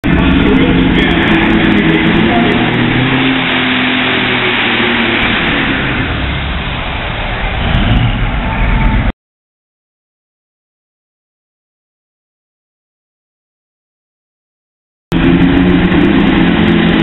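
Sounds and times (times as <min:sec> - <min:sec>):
vehicle engine running hard: 0:00.0 - 0:09.1, 0:15.1 - 0:17.0.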